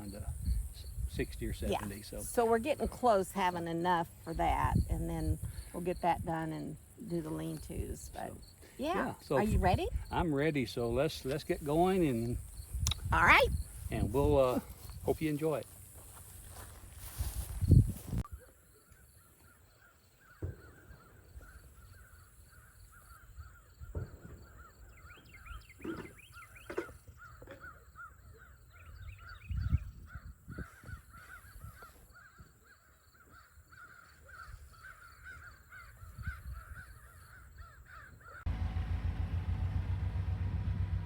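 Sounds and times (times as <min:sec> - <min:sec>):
birds calling: 0:00.0 - 0:15.6, 0:17.1 - 0:41.0
insects calling: 0:00.0 - 0:38.4
engine running with low pulse: 0:38.4 - 0:41.0.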